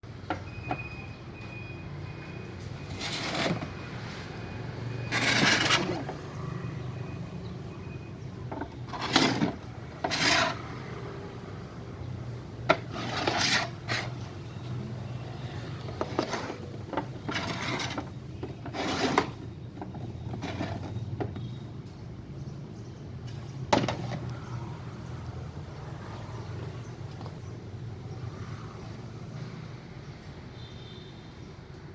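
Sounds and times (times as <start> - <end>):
scraping and rubbing strokes: 2.8 - 4.2, 5.1 - 6.3, 8.9 - 10.8, 12.8 - 14.4, 15.9 - 19.4.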